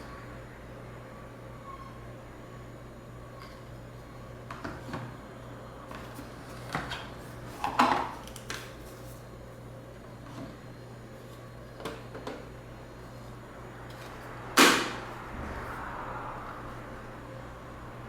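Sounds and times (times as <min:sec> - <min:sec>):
steady low hum: 0:08.8 - 0:18.0.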